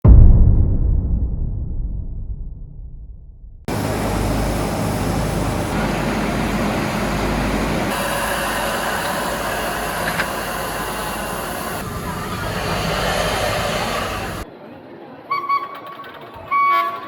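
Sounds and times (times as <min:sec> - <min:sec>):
loud train noise: 0:03.7 - 0:14.5.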